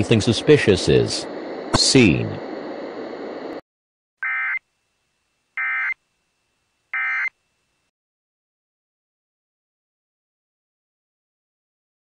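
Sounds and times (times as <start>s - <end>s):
digital data tone bursts: 7.0s - 7.3s.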